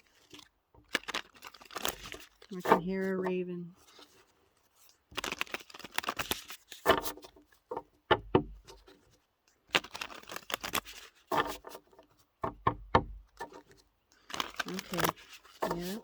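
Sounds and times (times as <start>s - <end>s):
cards being shuffled: 0.0s - 7.8s, 8.6s - 12.3s, 13.3s - 16.0s.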